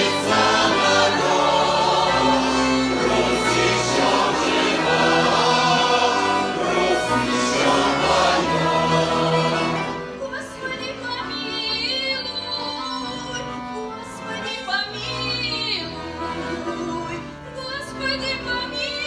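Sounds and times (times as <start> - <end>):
choir singing: 0.0 - 10.1
sustained accompaniment: 0.0 - 19.0.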